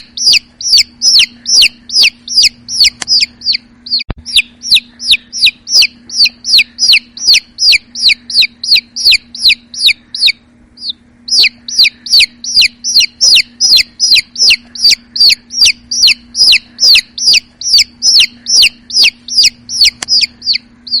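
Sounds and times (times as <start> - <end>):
baby chicks peeping: 0.0 - 21.0.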